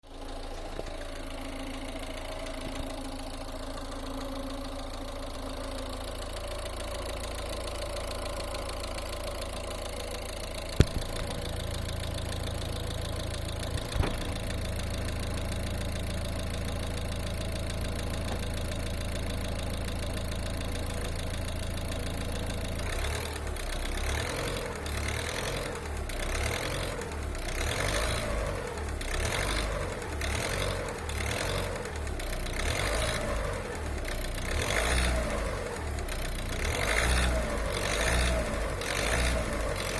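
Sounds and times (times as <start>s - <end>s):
diesel engine knocking: 0.0s - 39.9s
sharp clicks: 10.8s - 12.2s.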